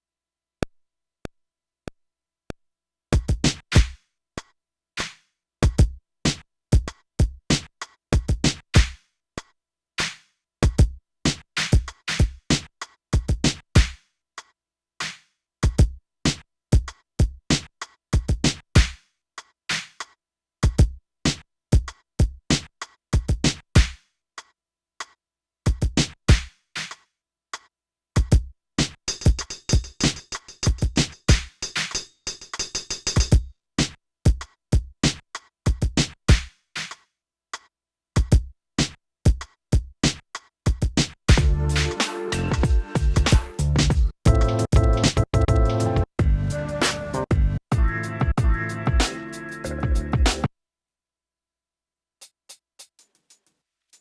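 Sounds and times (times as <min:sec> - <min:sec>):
drum machine beat: 0:03.2 - 0:04.0, 0:05.6 - 0:05.9, 0:06.8 - 0:09.0, 0:10.6 - 0:14.0, 0:16.8 - 0:19.0, 0:25.7 - 0:26.5, 0:28.2 - 0:32.0, 0:32.6 - 0:33.4, 0:34.3 - 0:36.5, 0:38.2 - 0:38.5, 0:39.3 - 0:50.5.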